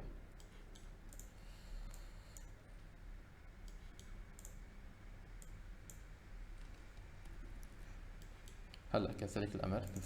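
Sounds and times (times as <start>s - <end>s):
low steady room hum: 0.0s - 10.0s
computer mouse clicking: 0.4s - 2.5s, 3.6s - 4.7s, 5.3s - 8.9s, 9.8s - 10.0s.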